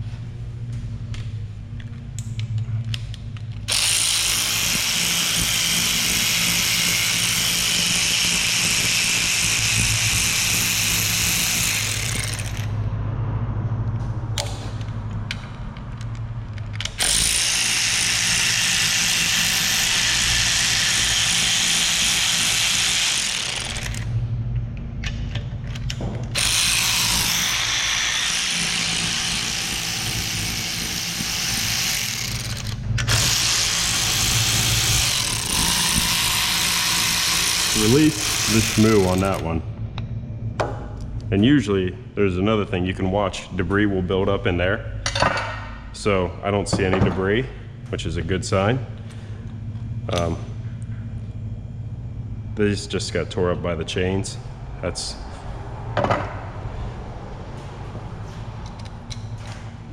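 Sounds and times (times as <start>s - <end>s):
steady low hum: 0.0s - 59.9s
power tool running: 3.6s - 12.8s, 16.8s - 24.3s, 26.2s - 39.5s.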